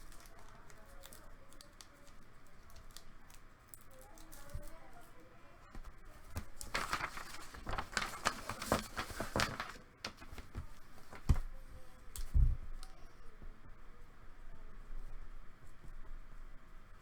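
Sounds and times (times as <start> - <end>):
cards rustling and sliding: 5.8 - 11.5.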